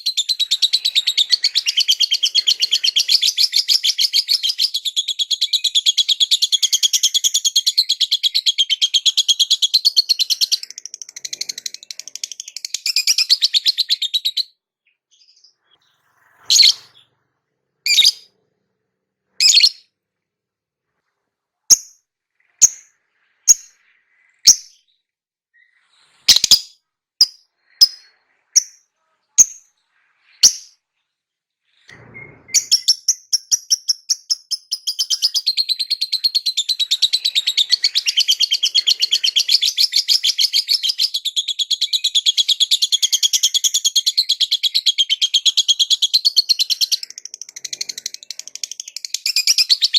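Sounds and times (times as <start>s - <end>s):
lovebird chirping: 0.0s - 17.2s, 17.8s - 18.4s, 19.4s - 20.0s, 21.7s - 30.8s, 31.7s - 49.9s.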